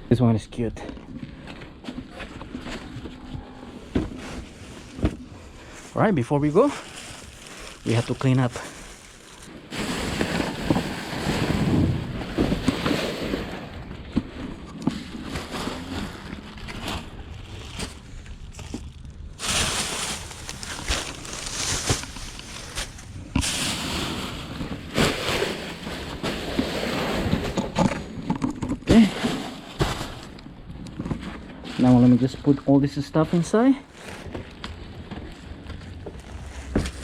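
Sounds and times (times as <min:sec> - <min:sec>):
rustling bags and trash: 0:00.6 - 0:37.0.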